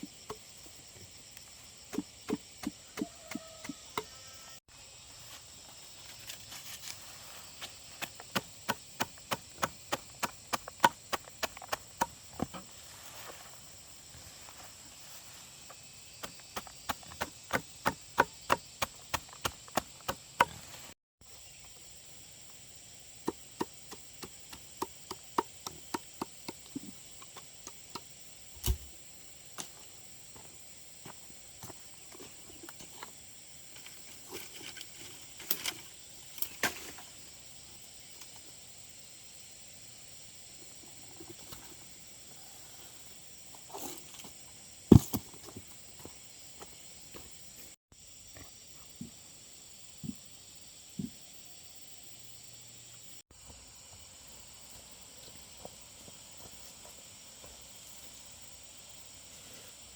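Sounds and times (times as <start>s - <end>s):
high insect drone: 0.0s - 59.9s
sharp chopping strikes: 28.6s - 28.9s.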